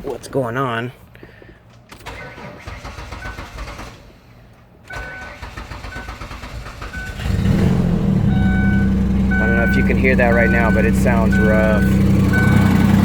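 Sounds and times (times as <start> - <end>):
rough engine cranking and running: 5.2 - 13.0.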